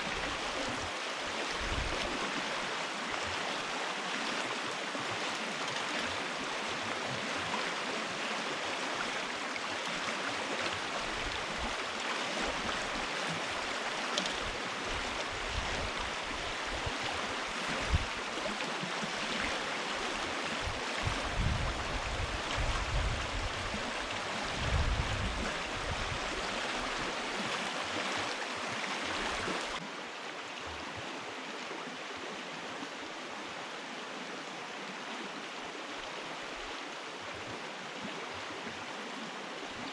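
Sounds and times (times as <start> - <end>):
stream rushing: 0.0 - 39.9.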